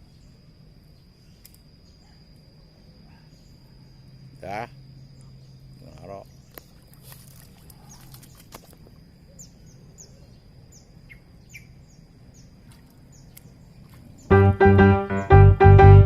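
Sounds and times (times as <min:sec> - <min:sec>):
bird chirping: 0:09.2 - 0:15.6
piano-like keyboard music: 0:14.3 - 0:16.0
steady high tone: 0:14.3 - 0:16.0.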